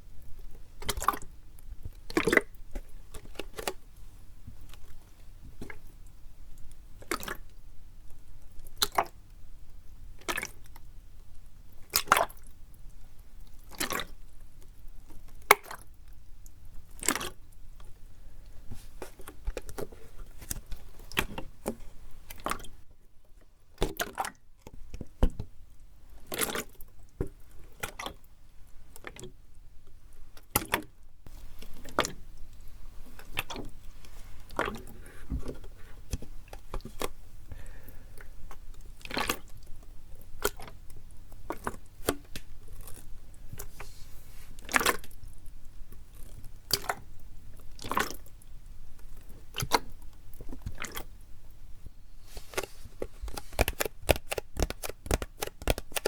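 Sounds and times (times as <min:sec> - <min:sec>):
plastic bottle crinkling: 0:52.2 - 0:56.0.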